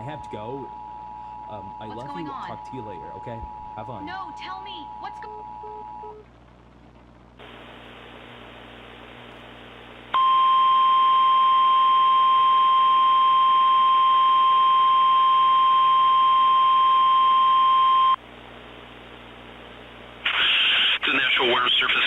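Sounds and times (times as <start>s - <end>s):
static hiss: 7.4s - 10.2s, 18.1s - 22.0s.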